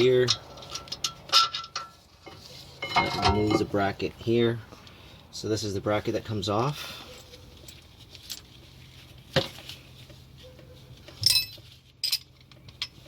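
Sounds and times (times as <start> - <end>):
metal brake parts clinking: 0.0 - 3.8, 11.0 - 13.0.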